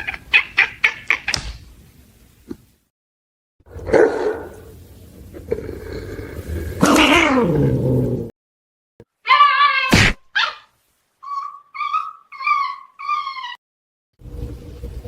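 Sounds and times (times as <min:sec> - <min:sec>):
pet animal high-pitched calls: 0:09.3 - 0:13.6.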